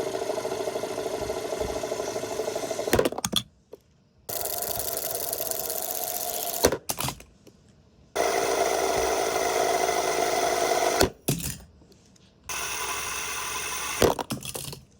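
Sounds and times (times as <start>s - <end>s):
fidget spinner whirring: 0.0s - 3.0s, 4.3s - 6.6s.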